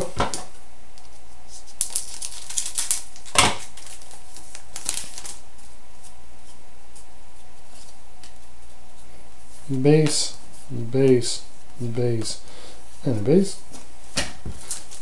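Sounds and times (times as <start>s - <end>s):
steady low hum: 0.0s - 15.0s
wrapper crackling: 1.7s - 5.4s.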